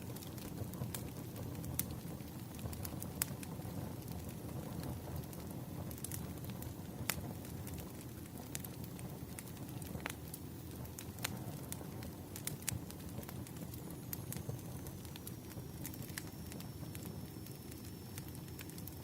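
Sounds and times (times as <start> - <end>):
fire crackling and popping: 0.0 - 19.0
flames rumbling: 0.0 - 19.0.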